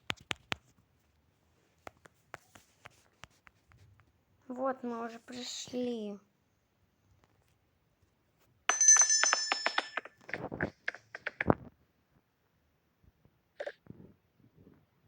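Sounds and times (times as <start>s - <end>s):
electric bell ringing: 8.7s - 10.1s
irregular knocks: 8.7s - 11.5s.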